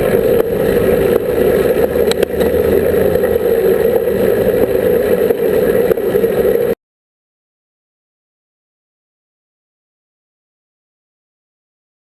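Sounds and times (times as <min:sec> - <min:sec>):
street traffic: 0:00.0 - 0:06.8
vehicle engine running: 0:00.0 - 0:06.8.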